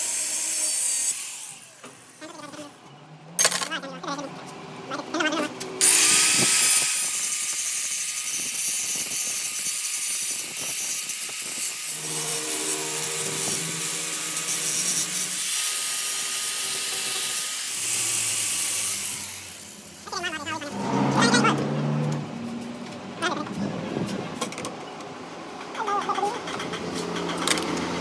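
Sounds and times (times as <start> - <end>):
tool rasping and scraping: 5.8 - 24.2
brief humming tones: 11.9 - 16.0.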